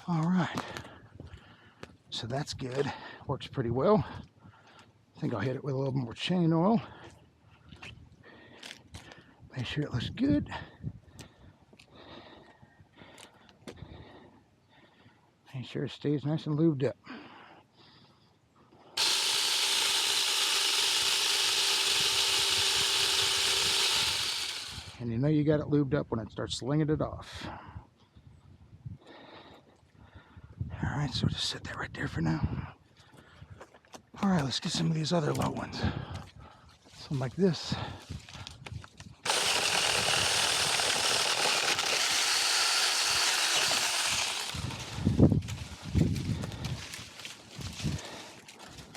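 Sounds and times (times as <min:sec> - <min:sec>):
mini chainsaw running: 0:19.0 - 0:25.0, 0:39.2 - 0:45.8.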